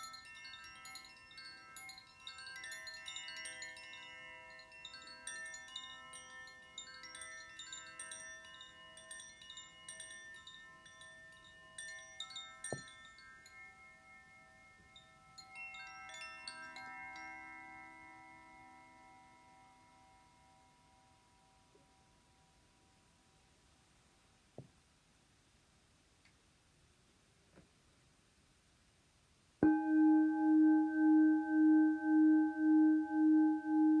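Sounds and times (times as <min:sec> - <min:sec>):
tuned chimes ringing: 0:00.0 - 0:19.6, 0:29.6 - 0:34.0
singing bowl ringing: 0:29.6 - 0:34.0.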